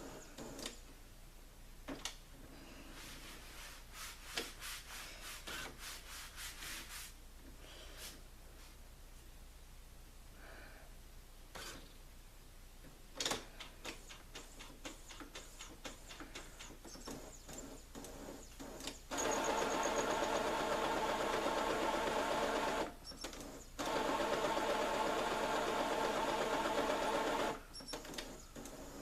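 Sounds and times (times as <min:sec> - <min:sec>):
printer motor whirring: 0:17.2 - 0:27.6.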